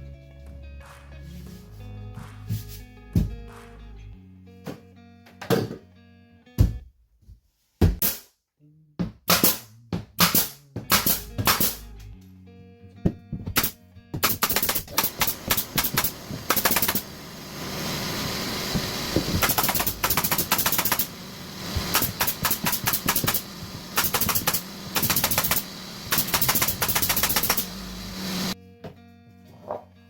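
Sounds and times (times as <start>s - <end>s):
background music: 0.0s - 6.7s
rapid sharp clicks and knocks: 13.6s - 17.2s, 18.7s - 28.6s
steady hissing: 14.6s - 28.6s.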